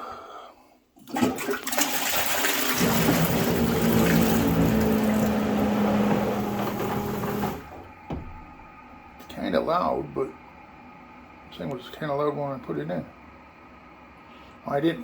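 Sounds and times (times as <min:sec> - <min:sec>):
toilet flushing water rushing: 0:01.0 - 0:08.2
pump motor humming: 0:01.1 - 0:08.3.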